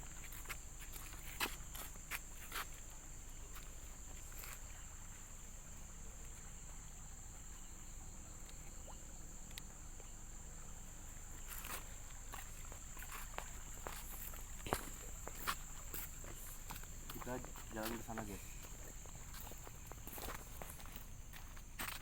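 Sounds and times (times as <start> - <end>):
high-pitched insect chorus: 0.0 - 22.0
footsteps on ground: 0.1 - 5.1, 11.1 - 22.0.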